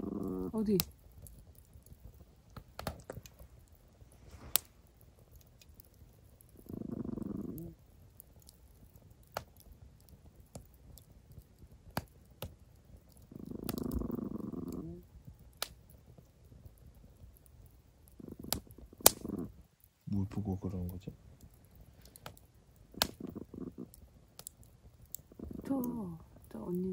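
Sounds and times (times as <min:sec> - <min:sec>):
dog growling low: 0:00.0 - 0:00.8, 0:06.6 - 0:07.8, 0:13.2 - 0:15.0, 0:18.1 - 0:19.5, 0:22.9 - 0:24.0, 0:25.2 - 0:26.9
campfire crackling and popping: 0:00.0 - 0:26.9.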